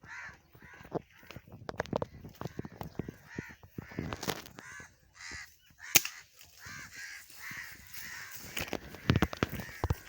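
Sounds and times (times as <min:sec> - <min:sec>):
crows cawing: 0:00.0 - 0:10.0
sharp crack: 0:05.9 - 0:06.3.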